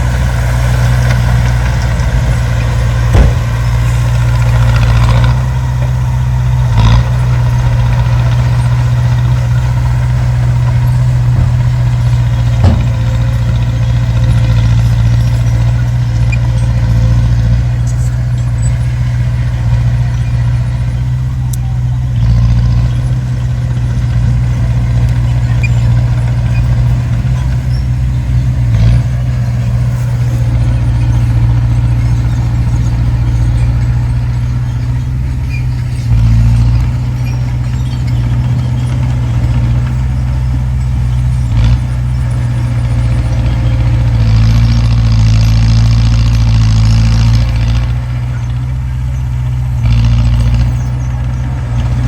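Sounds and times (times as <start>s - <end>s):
heavy machinery engine running: 0.0s - 52.0s
sharp knocks: 3.0s - 3.8s, 12.5s - 13.2s.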